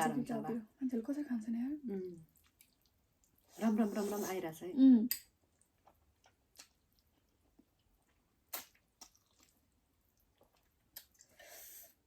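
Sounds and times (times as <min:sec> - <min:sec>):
person chewing noodles: 0:05.4 - 0:12.0.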